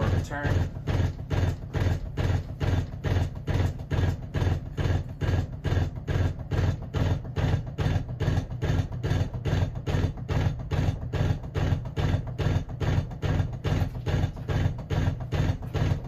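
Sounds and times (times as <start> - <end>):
ceiling fan rhythmic thudding: 0.0 - 16.0.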